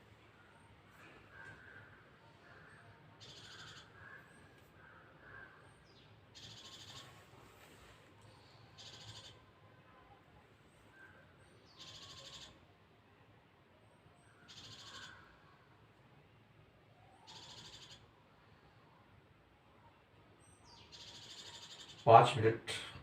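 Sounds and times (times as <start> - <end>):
soft bird chirps: 0.0 - 12.6, 13.9 - 15.6, 17.0 - 18.8.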